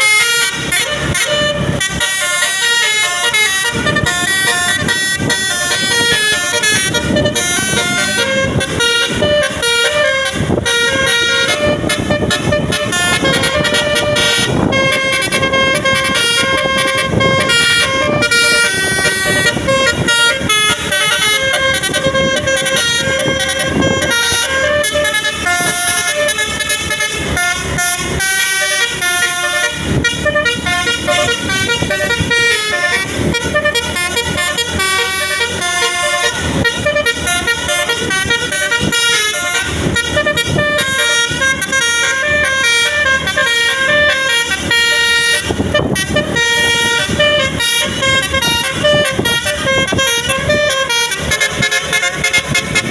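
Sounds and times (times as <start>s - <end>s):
bus multi-tone horn playing tune: 0.0s - 52.9s.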